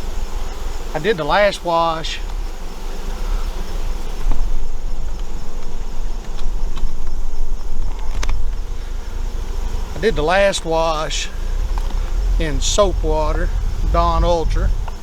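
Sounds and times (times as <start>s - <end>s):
bees buzzing: 0.0s - 15.0s
low rumble: 8.4s - 15.0s.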